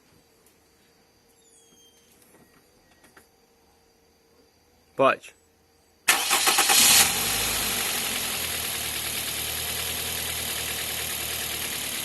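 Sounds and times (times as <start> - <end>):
car engine starting and idling: 6.1 - 12.0.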